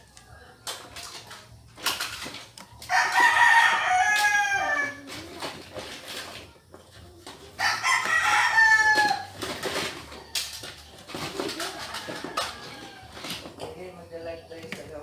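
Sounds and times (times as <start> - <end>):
rooster crowing: 2.9 - 5.1, 7.6 - 10.5, 11.5 - 13.5.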